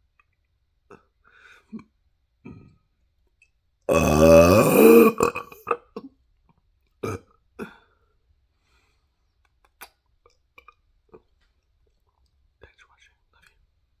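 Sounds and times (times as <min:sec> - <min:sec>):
person burping: 0:03.9 - 0:05.9.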